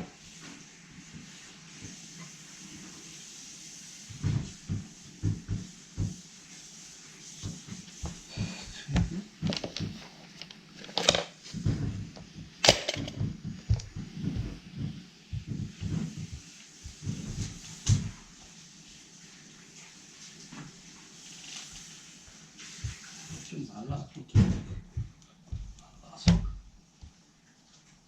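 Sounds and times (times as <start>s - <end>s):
objects knocking and clattering: 9.0s - 16.4s.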